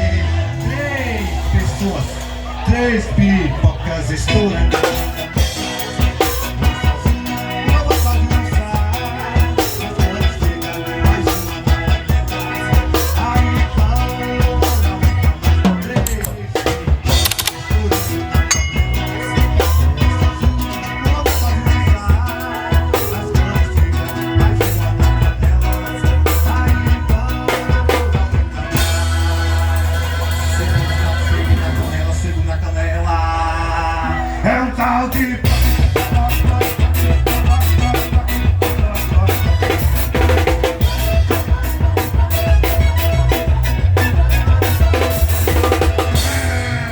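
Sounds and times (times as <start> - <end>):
live band music: 0.0 - 32.8, 33.5 - 46.9
bass: 0.0 - 46.9
drum kit: 4.5 - 32.5, 35.1 - 46.9.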